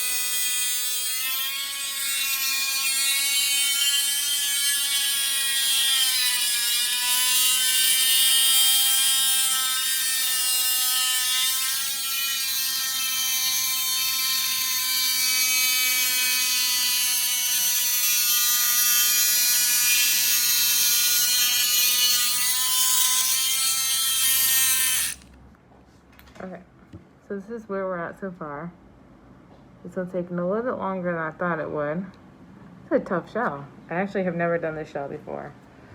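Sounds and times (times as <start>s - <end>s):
rotary tool grinding shell: 0.0s - 25.3s.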